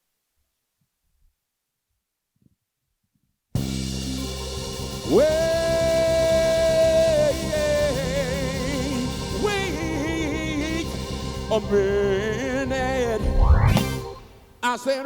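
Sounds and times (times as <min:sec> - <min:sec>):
soul band playing: 0:03.6 - 0:14.6
person singing: 0:05.0 - 0:13.8.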